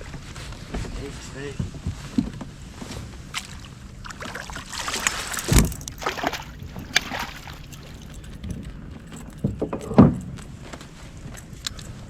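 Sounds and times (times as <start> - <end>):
water splashing against a kayak: 3.0 - 8.6
knocks on the hull: 5.4 - 5.9
heavy thump: 5.4 - 6.0.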